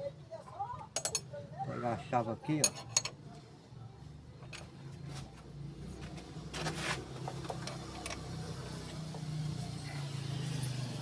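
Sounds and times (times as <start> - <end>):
wrench clinking on metal: 1.0 - 1.3.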